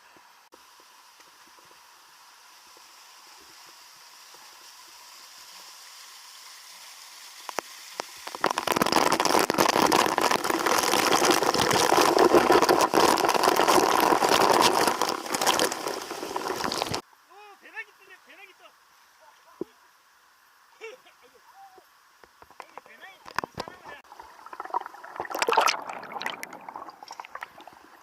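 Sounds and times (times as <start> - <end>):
stream water rushing: 8.1 - 17.0, 22.5 - 28.0.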